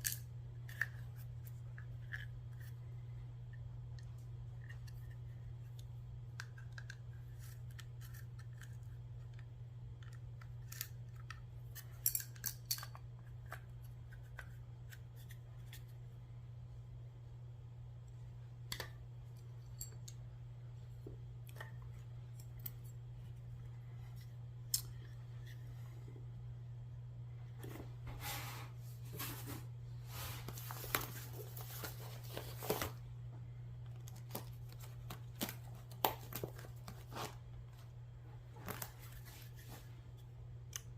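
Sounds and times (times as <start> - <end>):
steady low hum: 0.0 - 40.9
pistol parts clicking: 10.5 - 13.0.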